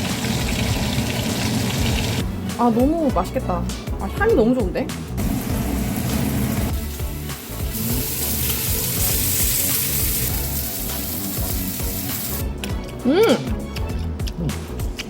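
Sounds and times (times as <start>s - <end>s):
background music: 0.0s - 15.0s
steak sizzling in a frying pan: 5.3s - 12.4s.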